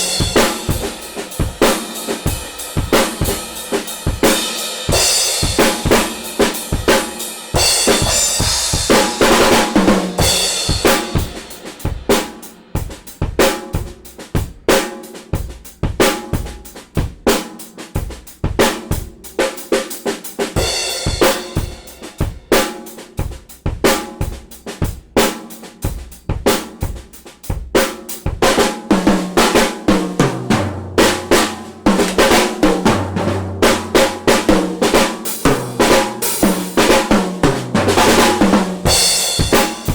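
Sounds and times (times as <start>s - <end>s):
crash cymbals: 0.0s - 5.6s
drum kit groove: 0.0s - 39.9s.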